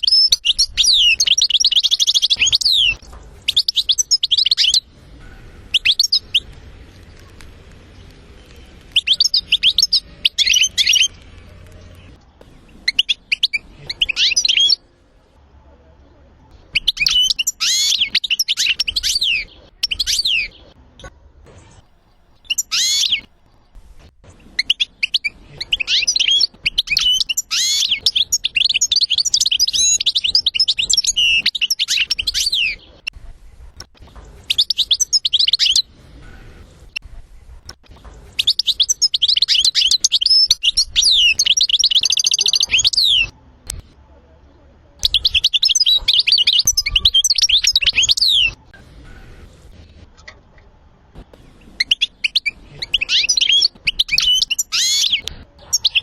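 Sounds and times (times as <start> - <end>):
songbird twittering trills: 0.0 - 14.9, 37.4 - 43.8, 45.0 - 48.6.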